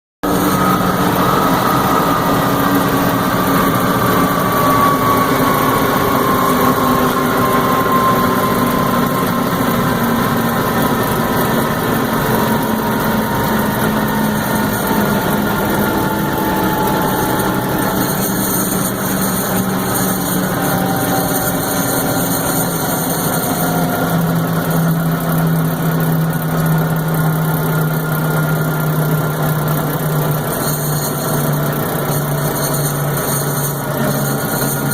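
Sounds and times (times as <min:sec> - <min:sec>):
thin whistling tone: 0:00.2 - 0:26.8
diesel truck engine running: 0:00.2 - 0:34.9.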